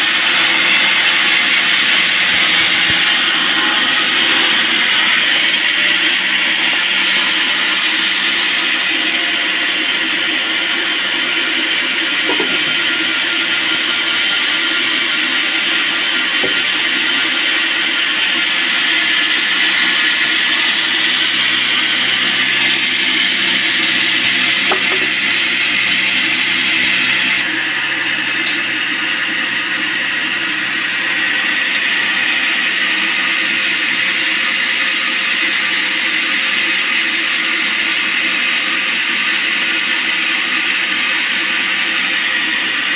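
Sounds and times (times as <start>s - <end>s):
band saw cutting log: 0.0s - 42.9s.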